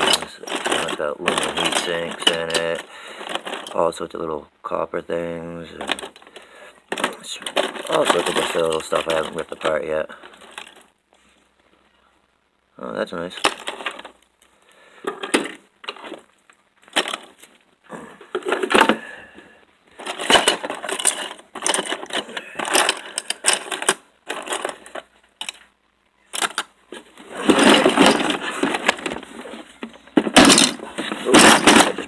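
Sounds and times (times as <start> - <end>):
metal scrap parts clinking: 0.0 - 3.8, 6.9 - 10.8, 13.4 - 14.1, 16.9 - 17.4, 18.3 - 19.0, 20.0 - 25.6, 26.3 - 32.0.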